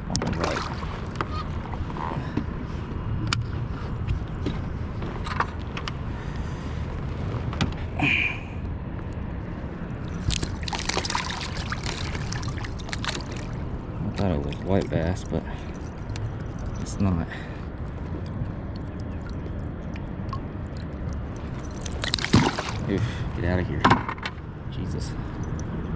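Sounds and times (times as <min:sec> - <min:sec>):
water splashing along hull: 0:00.0 - 0:04.0, 0:10.0 - 0:23.5.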